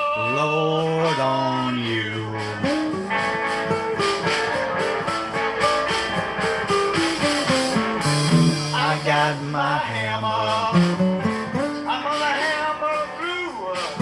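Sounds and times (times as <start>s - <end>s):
wavering lead guitar notes: 0.0s - 14.0s
picked electric guitar notes: 1.8s - 9.8s
steady bass line: 2.6s - 9.5s.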